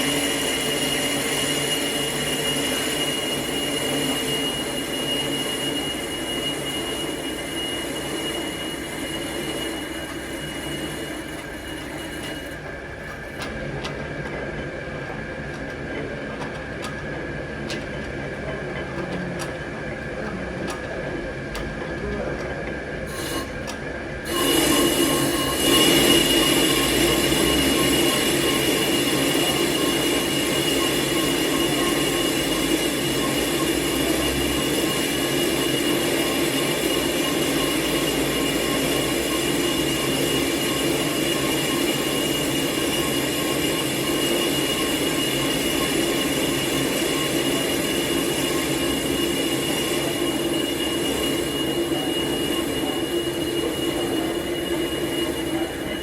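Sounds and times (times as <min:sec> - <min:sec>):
lathe cutting tool squealing: 0:00.0 - 0:15.9, 0:19.7 - 0:56.0
lathe rough hum: 0:00.0 - 0:56.0.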